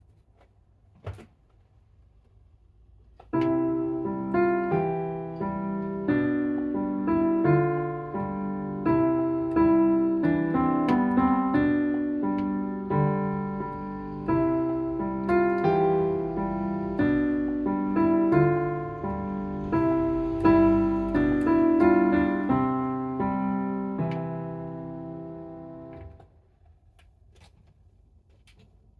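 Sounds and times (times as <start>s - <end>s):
gentle piano lullaby: 3.3s - 26.2s.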